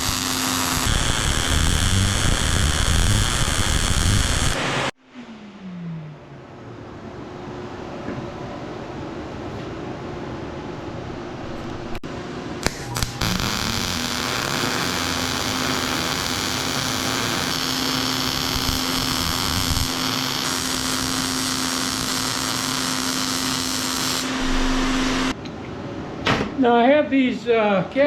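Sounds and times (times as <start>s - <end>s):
electric motor whining: 0.0s - 4.6s, 12.6s - 25.3s
loud hiss: 0.0s - 4.9s, 12.6s - 25.3s.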